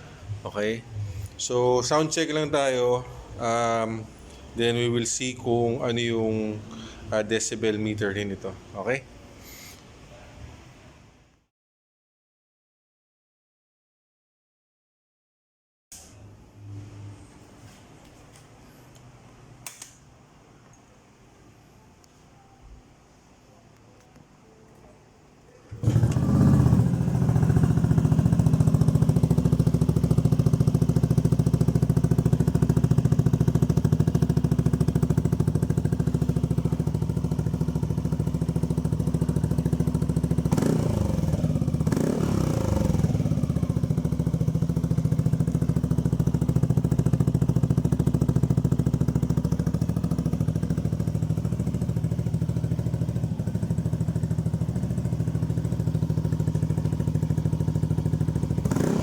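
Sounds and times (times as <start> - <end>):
scooter engine idling and revving: 25.8 - 59.0.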